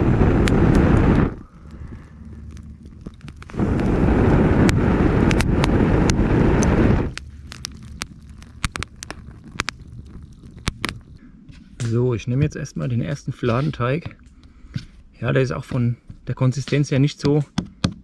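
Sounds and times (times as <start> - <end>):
loud low rushing noise: 0.0 - 7.6
campfire crackling: 0.0 - 17.2.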